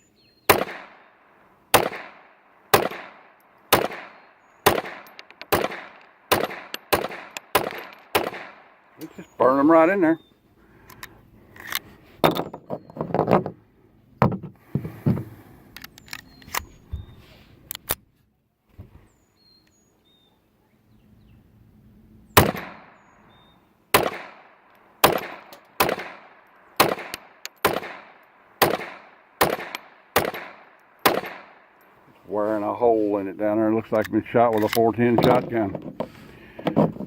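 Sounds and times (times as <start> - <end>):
pistol shots: 0.5 - 1.1, 1.7 - 8.8, 22.4 - 23.1, 23.9 - 31.8.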